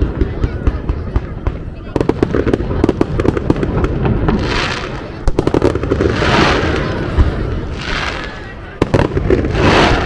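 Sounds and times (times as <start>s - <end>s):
crackling hiss of fireworks: 0.0s - 10.0s
fireworks bangs and pops: 0.0s - 10.0s.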